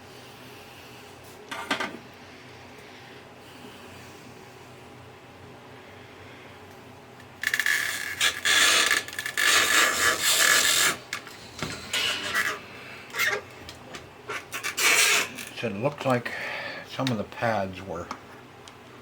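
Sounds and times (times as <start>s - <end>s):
scraping and rubbing: 7.5s - 11.0s, 14.3s - 15.5s.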